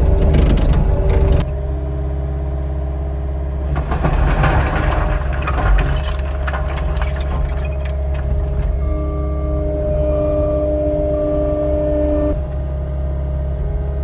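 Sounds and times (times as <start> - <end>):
diesel engine running: 0.0 - 14.0.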